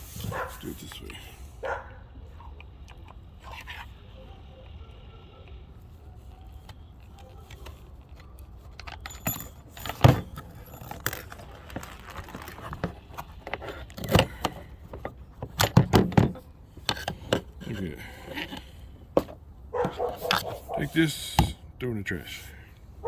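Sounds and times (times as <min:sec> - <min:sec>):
metallic clinks and rattles: 0:07.2 - 0:18.7.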